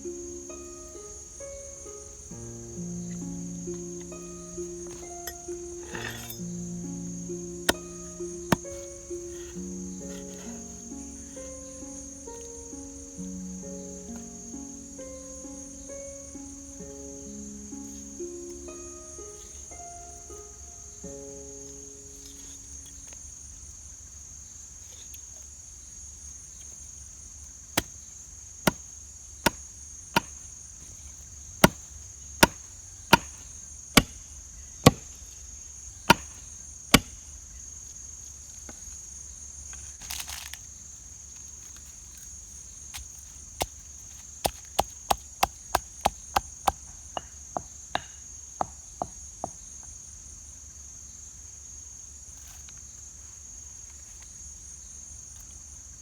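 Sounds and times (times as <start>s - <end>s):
crickets chirring: 0.0s - 56.0s
blade chopping wood: 7.7s - 10.5s, 28.7s - 28.9s, 31.6s - 33.4s, 34.0s - 34.2s, 36.1s - 36.4s, 37.0s - 37.2s, 44.4s - 47.3s.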